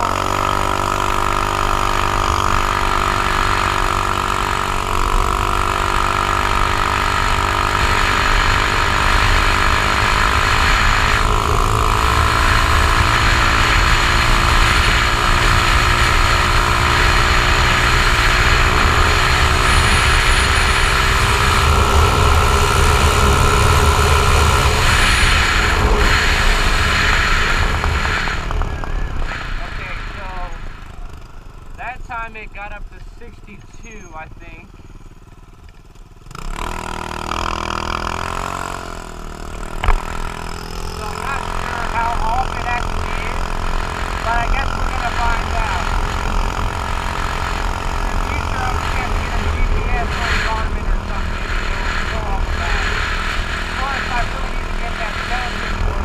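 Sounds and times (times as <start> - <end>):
scooter engine running hard: 0.0 - 56.0
wind rumble: 6.8 - 31.8, 42.9 - 56.0.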